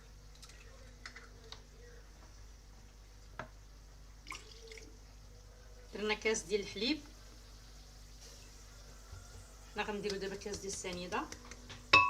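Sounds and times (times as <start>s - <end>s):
milk dripping: 0.3s - 1.6s, 4.2s - 5.0s.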